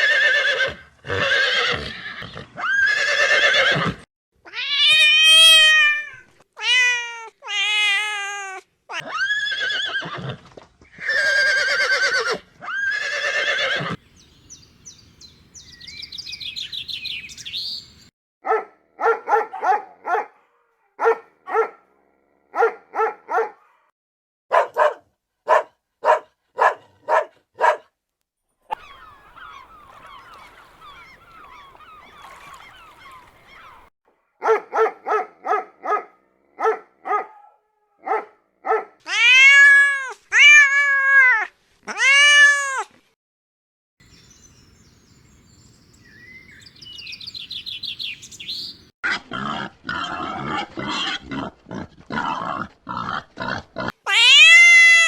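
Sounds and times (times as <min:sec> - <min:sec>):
horse whinnying: 0:00.0 - 0:06.1, 0:08.9 - 0:14.0, 0:54.0 - 0:55.0
cat meowing: 0:04.5 - 0:09.3, 0:39.1 - 0:42.9, 0:54.0 - 0:55.0
dog barking: 0:18.4 - 0:21.9, 0:22.5 - 0:23.9, 0:24.5 - 0:28.0, 0:34.4 - 0:39.0.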